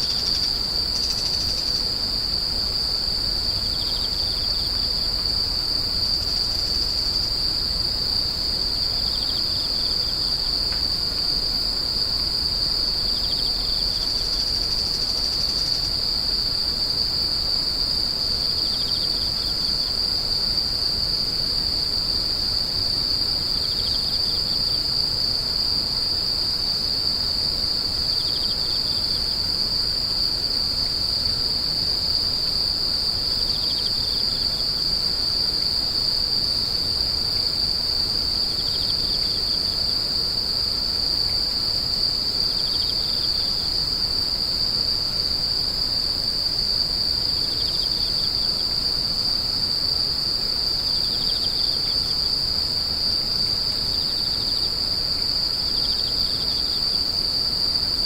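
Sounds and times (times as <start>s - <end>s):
short insect chirp: 0.0s - 20.7s
insects trilling: 0.0s - 58.0s.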